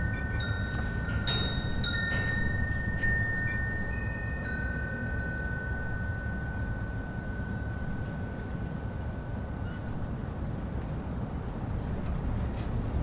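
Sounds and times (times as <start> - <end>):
wind chimes ringing: 0.0 - 10.2
wind rumbling: 0.0 - 13.0.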